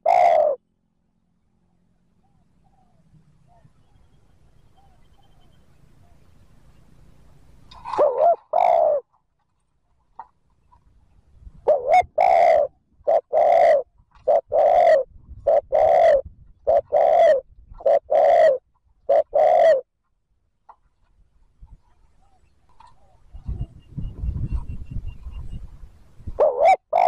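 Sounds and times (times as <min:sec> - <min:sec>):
dove cooing: 0:00.0 - 0:00.6, 0:07.8 - 0:09.1, 0:11.6 - 0:19.9, 0:26.2 - 0:27.0.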